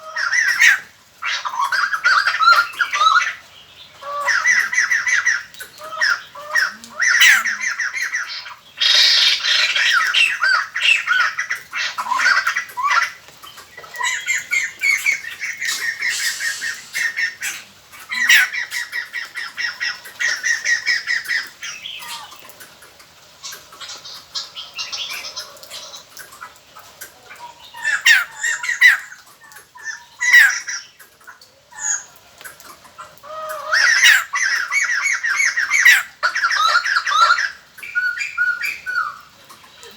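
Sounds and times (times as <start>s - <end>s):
birds chattering calls: 0.1s - 22.8s.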